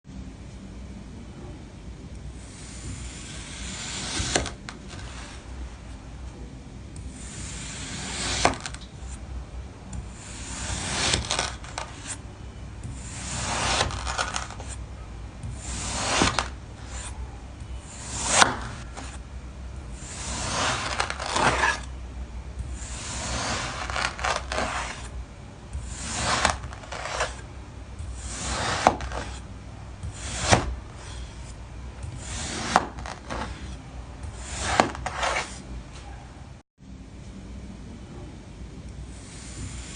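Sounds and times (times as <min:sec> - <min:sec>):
blade slicing kinetic sand: 0:02.4 - 0:05.4, 0:07.0 - 0:08.8, 0:10.1 - 0:12.2, 0:12.9 - 0:14.8, 0:15.5 - 0:17.2, 0:17.8 - 0:19.2, 0:19.9 - 0:21.9, 0:22.7 - 0:25.2, 0:25.8 - 0:27.4, 0:28.1 - 0:29.5, 0:30.1 - 0:31.5, 0:32.2 - 0:33.7, 0:34.4 - 0:35.6.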